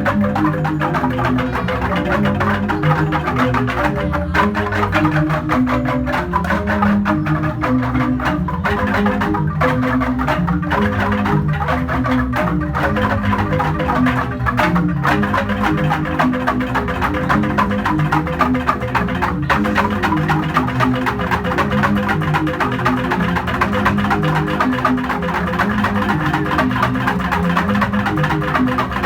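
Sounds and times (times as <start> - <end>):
bamboo xylophones playing fast notes: 0.0 - 29.0.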